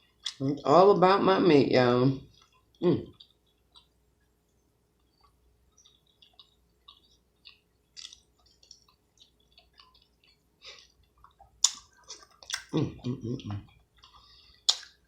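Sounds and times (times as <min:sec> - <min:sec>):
lip smacks: 0:05.0 - 0:12.8, 0:14.0 - 0:15.0
wet chewing: 0:05.0 - 0:15.0.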